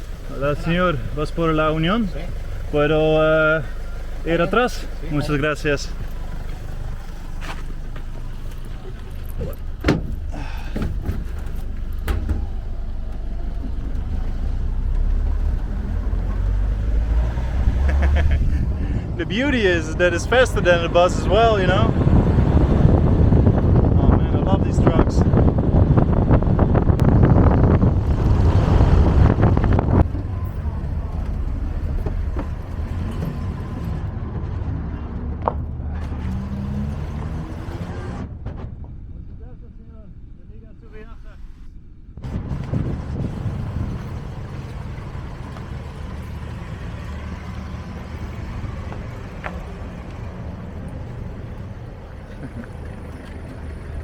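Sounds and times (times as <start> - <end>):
road rumble: 0.0 - 54.0
truck engine: 0.0 - 54.0
wind on microphone: 14.6 - 19.2, 21.1 - 33.1, 42.2 - 44.6.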